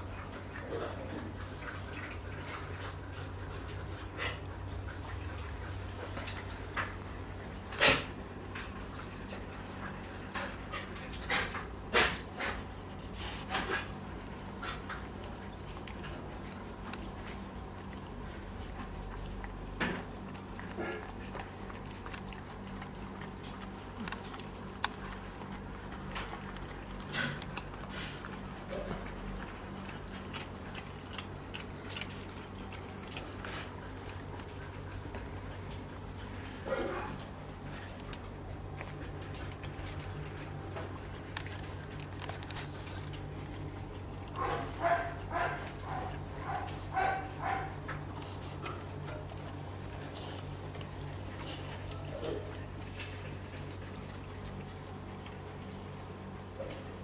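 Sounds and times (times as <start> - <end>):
low electrical hum: 0.0 - 57.0
puppies shifting with soft rustles: 0.0 - 57.0
puppies whimpering: 3.7 - 8.8, 36.8 - 38.1.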